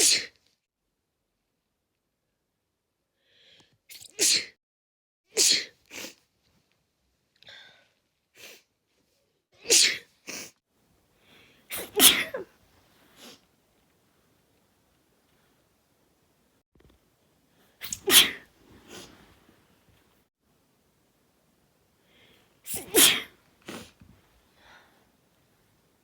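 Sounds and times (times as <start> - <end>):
person sneezing: 0.0 - 0.4, 3.9 - 4.6, 5.4 - 6.2, 9.7 - 10.5, 11.7 - 12.5, 17.8 - 19.2, 22.6 - 24.0.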